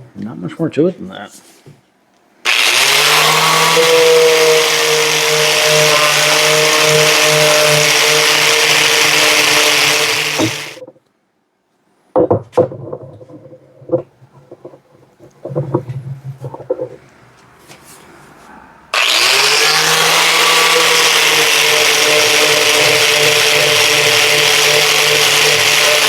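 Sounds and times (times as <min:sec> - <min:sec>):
angle grinder on steel: 0:02.5 - 0:10.8, 0:19.0 - 0:26.0
knocks and clatter: 0:09.4 - 0:11.0, 0:12.2 - 0:17.2.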